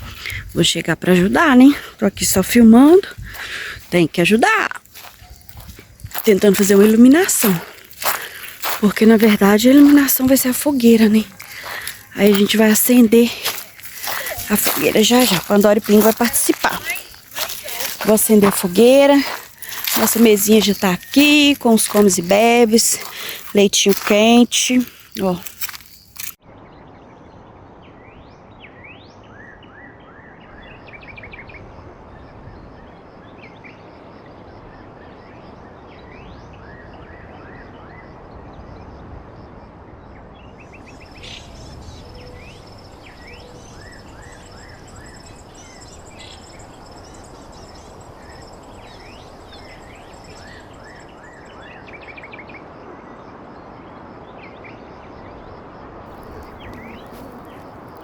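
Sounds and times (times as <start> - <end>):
small birds chirping: 0.0 - 26.4, 40.4 - 53.4, 56.1 - 58.0.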